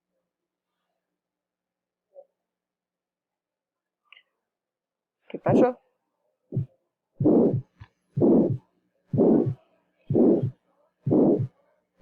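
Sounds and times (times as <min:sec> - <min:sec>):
heart murmur: 0:06.5 - 0:11.5
heartbeat: 0:06.5 - 0:11.5.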